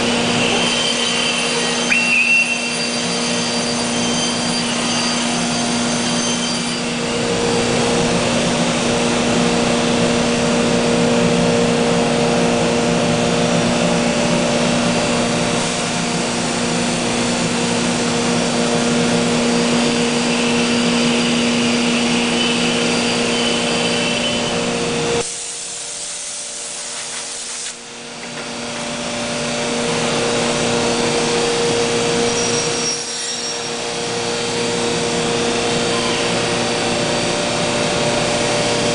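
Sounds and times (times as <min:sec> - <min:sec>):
router spindle cutting wood: 0:00.0 - 0:25.3, 0:27.2 - 0:38.9.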